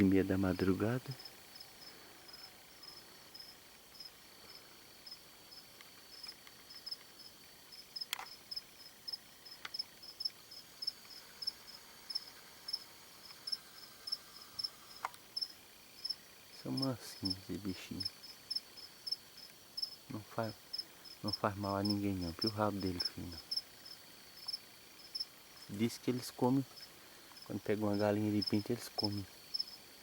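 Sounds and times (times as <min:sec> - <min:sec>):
crickets chirping: 0:00.0 - 0:30.0
faint clicks: 0:05.7 - 0:07.2, 0:08.0 - 0:08.4, 0:09.6 - 0:10.4, 0:15.0 - 0:15.2.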